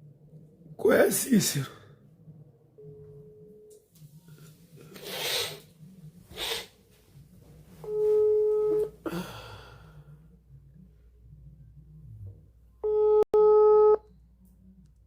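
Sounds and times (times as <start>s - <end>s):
telephone ringback tone: 7.9s - 8.9s, 12.8s - 14.0s.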